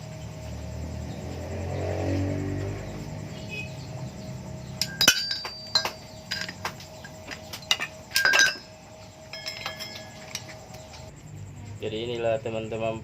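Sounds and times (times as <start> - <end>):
metal muffler parts clinking: 4.1 - 11.1.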